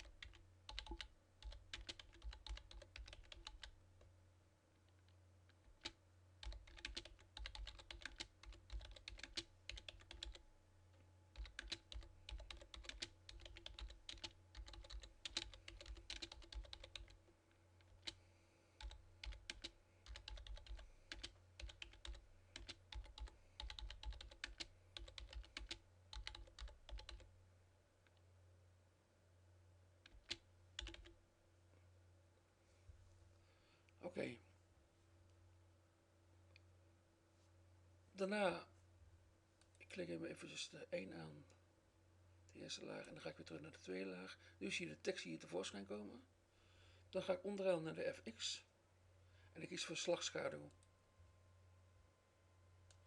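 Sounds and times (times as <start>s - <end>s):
keyboard typing: 0.0s - 3.8s, 5.6s - 10.4s, 11.3s - 17.2s, 17.8s - 18.2s, 18.8s - 27.3s, 30.0s - 31.2s.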